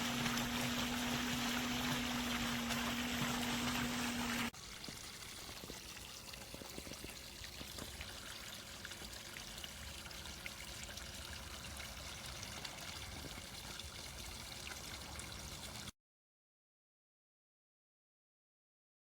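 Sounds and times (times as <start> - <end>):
fountain water splashing into pool: 0.0 - 15.9
water drips and splashes: 0.0 - 15.9.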